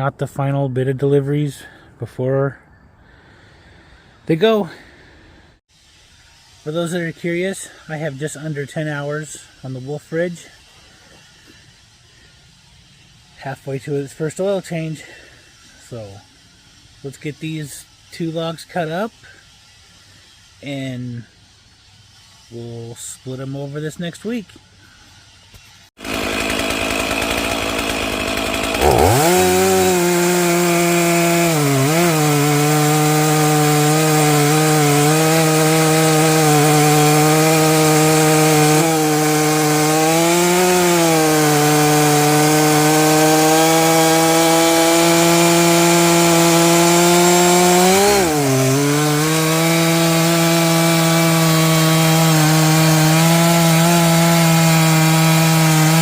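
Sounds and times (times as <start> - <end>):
chainsaw cutting log: 26.0 - 56.0.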